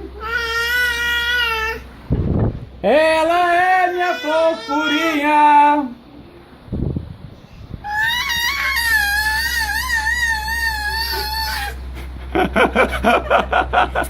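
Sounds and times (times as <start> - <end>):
fan humming: 0.0 - 14.0
toddler squealing into a fan: 7.8 - 11.8.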